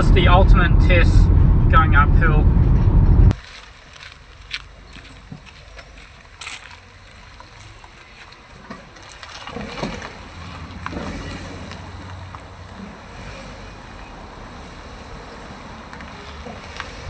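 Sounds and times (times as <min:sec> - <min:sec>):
wind buffeting microphone: 0:00.0 - 0:03.4
engine and road rumble: 0:00.0 - 0:17.0.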